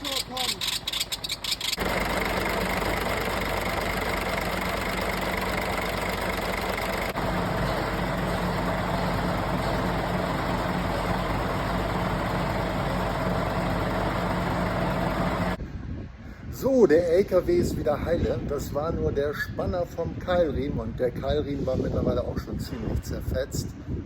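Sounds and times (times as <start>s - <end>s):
high belt whine: 1.8s - 15.6s
truck diesel engine idling: 1.8s - 15.6s.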